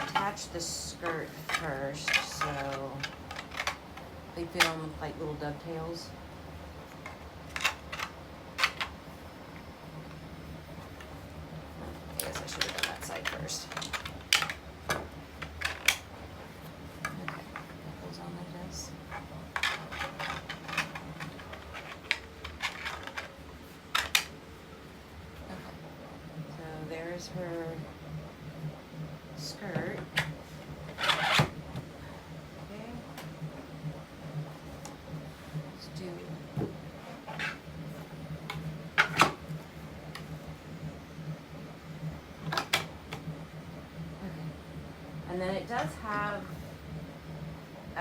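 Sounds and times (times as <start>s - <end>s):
plastic parts clicking together: 1.4s - 4.8s, 7.0s - 9.0s, 12.2s - 16.1s, 19.1s - 24.3s.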